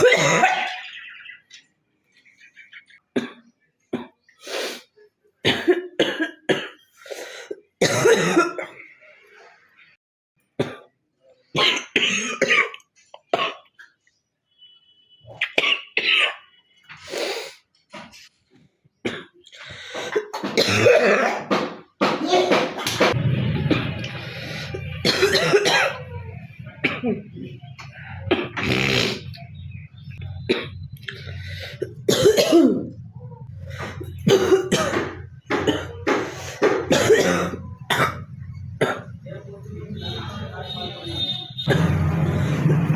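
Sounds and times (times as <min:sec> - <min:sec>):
girl coughing: 0:00.0 - 0:00.7, 0:05.5 - 0:06.7, 0:07.8 - 0:08.8, 0:25.0 - 0:26.2, 0:31.8 - 0:32.9, 0:34.2 - 0:36.2, 0:36.9 - 0:38.2.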